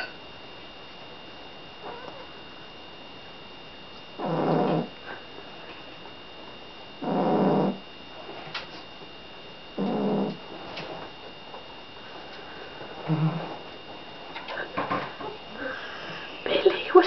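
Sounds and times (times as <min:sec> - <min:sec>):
cat snoring: 0:04.2 - 0:05.2, 0:07.0 - 0:07.8, 0:09.8 - 0:10.5.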